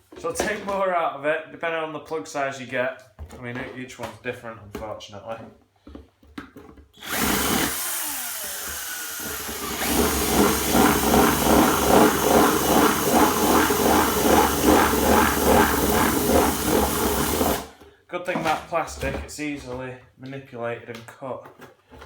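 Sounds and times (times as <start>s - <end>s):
power drill cutting plastic: 7.0s - 17.8s.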